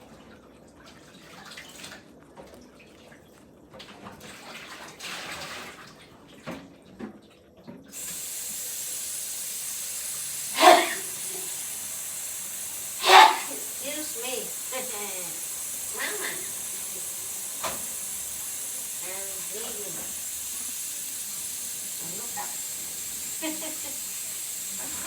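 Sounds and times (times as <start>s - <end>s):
tap water running: 0.8s - 25.0s
woman sneezing: 10.5s - 11.3s, 13.0s - 13.8s, 16.0s - 16.5s.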